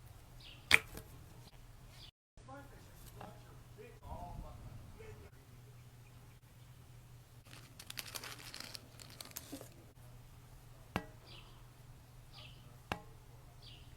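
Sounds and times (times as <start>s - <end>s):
slime crackling and popping: 7.5s - 9.7s.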